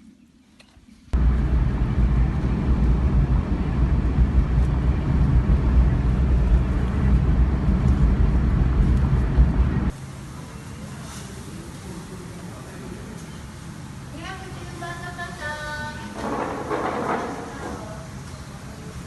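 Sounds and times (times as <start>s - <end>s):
vehicle engine and road noise: 1.1s - 14.2s.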